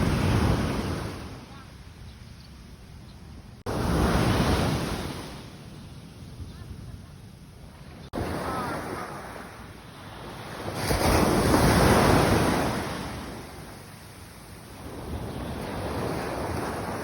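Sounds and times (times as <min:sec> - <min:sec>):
ocean wave breaking: 0:03.7 - 0:05.5, 0:08.0 - 0:14.0.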